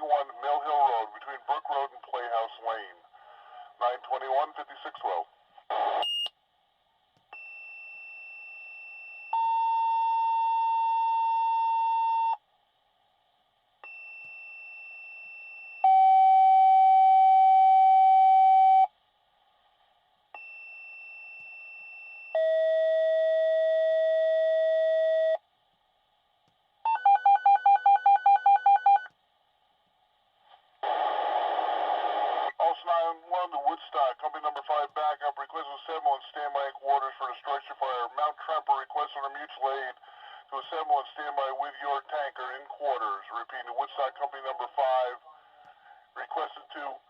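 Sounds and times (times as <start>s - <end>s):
dispatcher speaking over radio: 0.0s - 3.1s, 3.8s - 5.3s, 32.5s - 45.3s, 46.2s - 47.0s.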